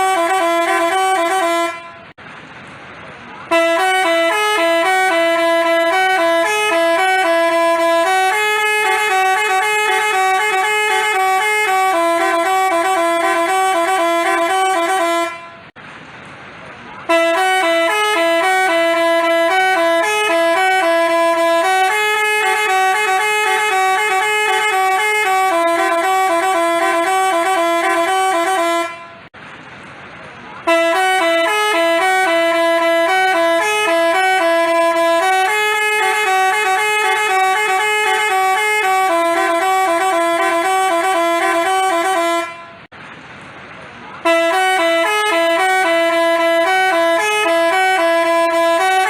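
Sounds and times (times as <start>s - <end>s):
musical bus horn playing a tune: 0.0s - 2.2s, 3.4s - 15.8s, 17.0s - 29.4s, 30.6s - 42.9s, 44.2s - 49.0s.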